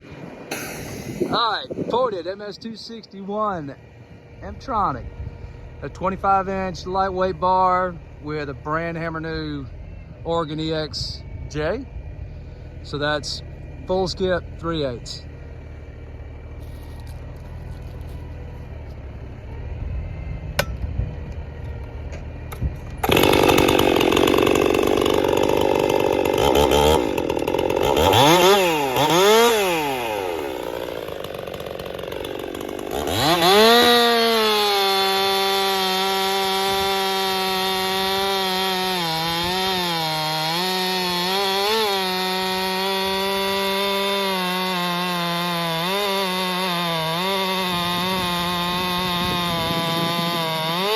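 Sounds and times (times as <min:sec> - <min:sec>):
chainsaw revving: 0:00.5 - 0:01.4, 0:12.8 - 0:19.0, 0:22.8 - 0:50.9.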